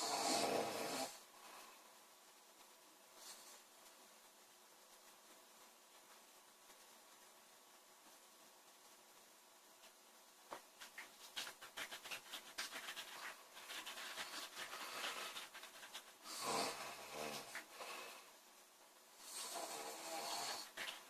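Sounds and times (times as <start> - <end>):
girl snoring: 0.0 - 1.2, 16.2 - 18.3, 19.2 - 20.9.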